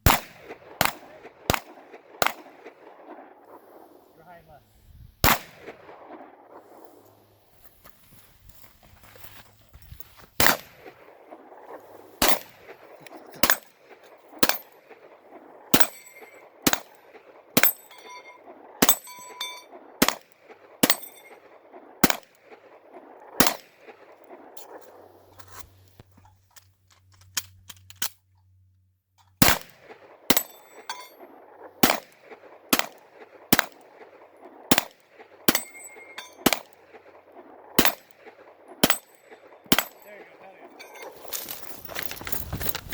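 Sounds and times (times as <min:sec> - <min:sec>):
pistol shots: 0:00.0 - 0:03.1, 0:05.2 - 0:06.2, 0:10.4 - 0:11.1, 0:12.2 - 0:13.7, 0:15.7 - 0:18.0, 0:20.0 - 0:21.3, 0:22.0 - 0:22.4, 0:23.4 - 0:24.0, 0:29.4 - 0:30.9, 0:31.8 - 0:37.0, 0:37.8 - 0:41.4
steel target ringing: 0:17.6 - 0:19.7.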